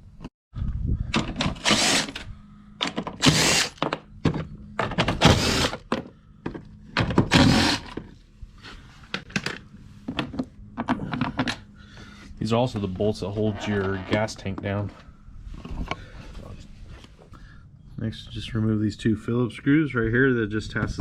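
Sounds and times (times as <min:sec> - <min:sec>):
knocks of tools and parts: 0:03.8 - 0:08.1, 0:09.1 - 0:11.6.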